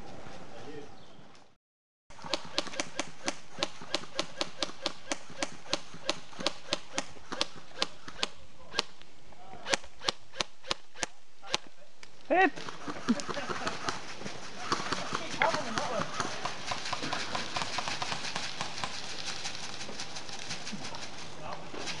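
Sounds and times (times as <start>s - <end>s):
airsoft guns shooting: 2.2s - 9.0s, 9.6s - 11.7s, 12.6s - 20.4s.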